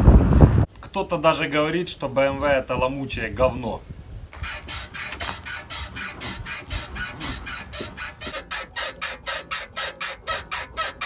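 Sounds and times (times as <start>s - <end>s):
suspension bushing squeaking: 4.4s - 11.0s.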